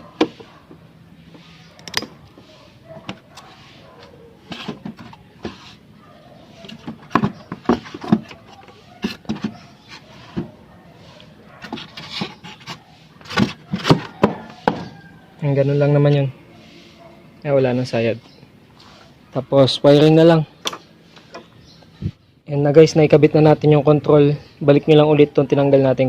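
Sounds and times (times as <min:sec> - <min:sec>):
clicks and knocks of handled parts: 0:01.7 - 0:03.4.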